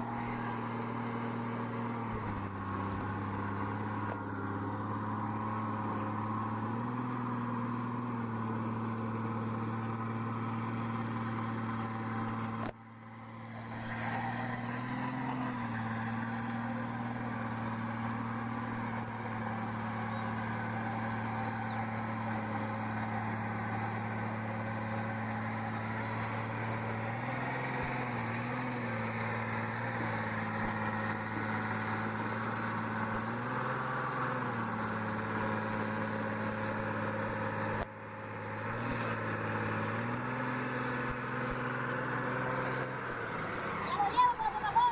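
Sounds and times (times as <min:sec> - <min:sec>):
heavy engine running: 0:00.0 - 0:44.9.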